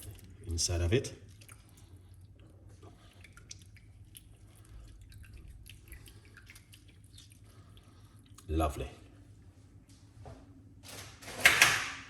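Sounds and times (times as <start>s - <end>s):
juice dripping into cup: 0.0s - 9.2s.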